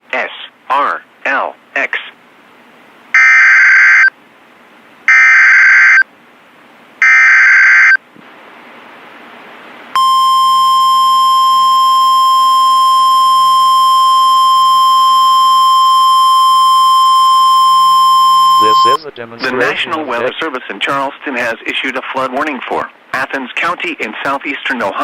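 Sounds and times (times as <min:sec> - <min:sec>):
faint radio hiss: 0:00.0 - 0:03.1, 0:18.5 - 0:25.0
steady warning alarm tone: 0:03.2 - 0:04.1, 0:05.1 - 0:06.0, 0:07.0 - 0:08.0, 0:10.0 - 0:19.0
screeching digital data tones: 0:18.2 - 0:19.0.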